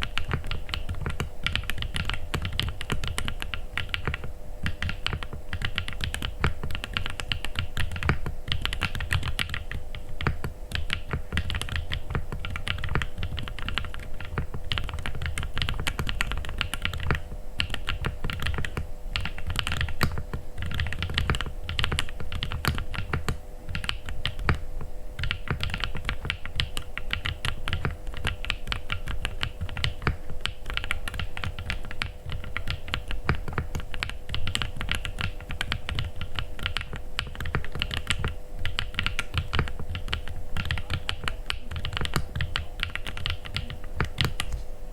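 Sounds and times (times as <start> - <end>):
fast typing on mechanical keyboard: 0.0 - 44.5.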